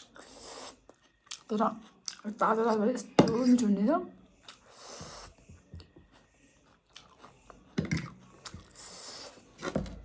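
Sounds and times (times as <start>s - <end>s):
person chewing food: 0.0s - 2.3s, 4.3s - 10.0s.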